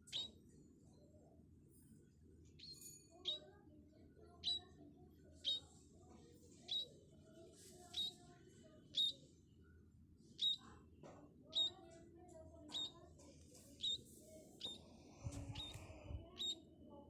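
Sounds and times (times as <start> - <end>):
small bird chirping: 0.0 - 0.4, 2.6 - 3.4, 4.4 - 4.7, 5.4 - 5.7, 6.6 - 6.9, 7.8 - 8.2, 8.9 - 9.2, 10.3 - 10.7, 11.5 - 11.8, 12.7 - 13.0, 13.7 - 16.6.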